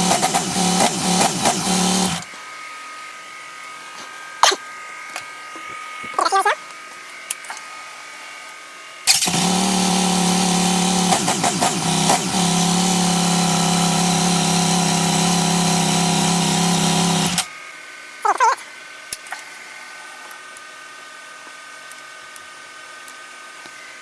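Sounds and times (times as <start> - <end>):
motorcycle engine running: 0.0 - 2.4, 9.1 - 17.5.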